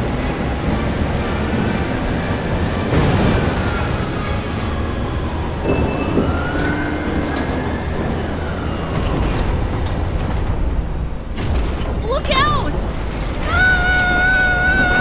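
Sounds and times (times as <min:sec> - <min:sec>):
storm noise with low rumble: 0:00.0 - 0:15.0
siren wailing: 0:03.5 - 0:10.0.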